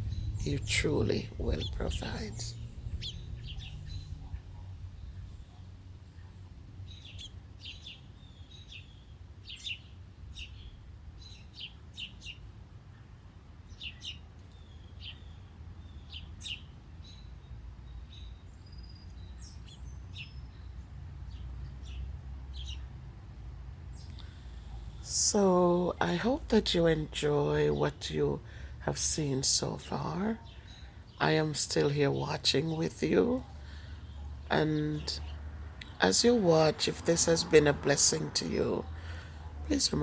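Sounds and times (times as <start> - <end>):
low background rumble: 0.0 - 7.3, 21.8 - 40.0
small birds chirping: 0.0 - 23.0, 23.9 - 40.0.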